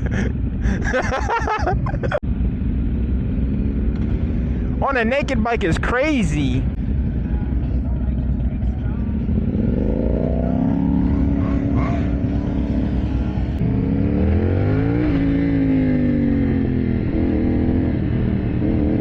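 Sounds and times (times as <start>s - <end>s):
motorcycle engine accelerating: 0.0s - 19.0s.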